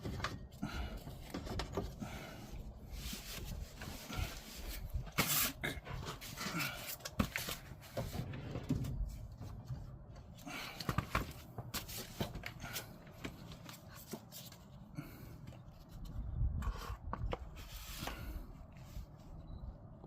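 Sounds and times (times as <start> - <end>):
knocks and clicks of work under car: 0.0 - 2.2.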